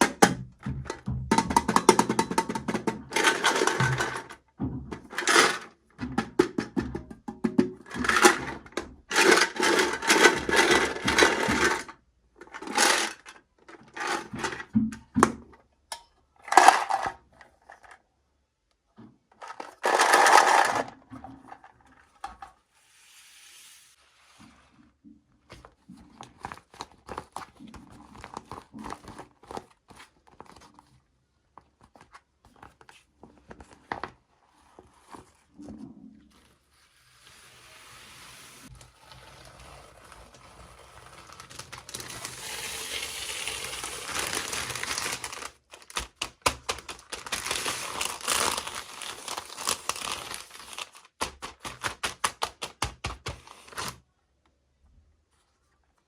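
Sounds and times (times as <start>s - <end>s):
plastic packaging crinkling: 39.1s - 52.7s.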